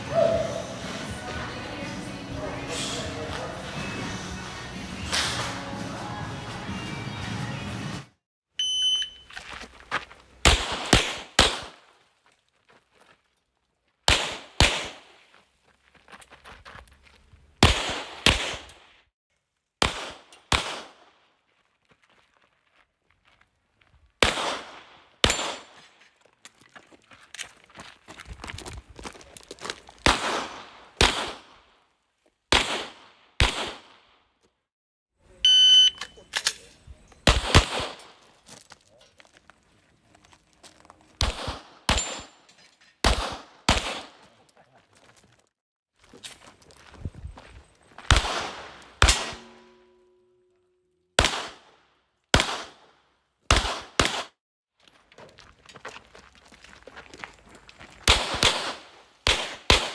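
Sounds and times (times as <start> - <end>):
shot timer electronic beep: 8.6 - 9.2, 35.5 - 36.2
pistol shots: 10.4 - 11.8, 14.1 - 15.1, 17.6 - 18.8, 19.8 - 21.0, 24.2 - 25.8, 30.0 - 31.6, 32.5 - 34.1, 37.2 - 38.2, 41.2 - 42.4, 43.0 - 44.3, 48.1 - 49.8, 51.2 - 51.8, 52.4 - 52.9, 53.5 - 54.3, 58.1 - 59.9.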